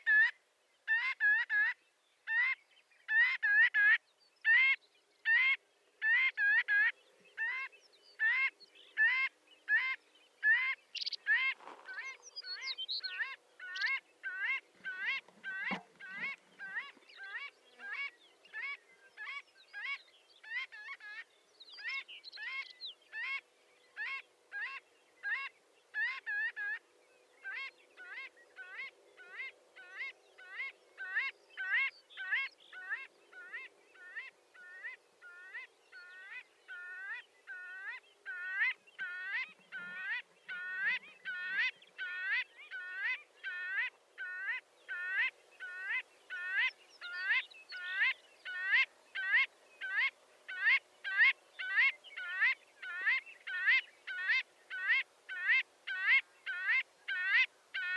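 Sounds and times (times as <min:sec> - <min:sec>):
birds giving nasal calls: 0:09.0 - 0:18.7.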